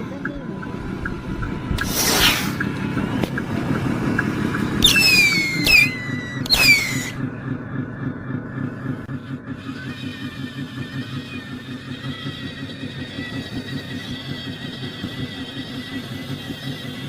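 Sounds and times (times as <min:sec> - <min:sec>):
faint regular ticking: 0:00.0 - 0:01.9, 0:02.6 - 0:04.8
model truck motor humming: 0:00.0 - 0:17.0
high squeals falling in pitch: 0:04.8 - 0:07.2.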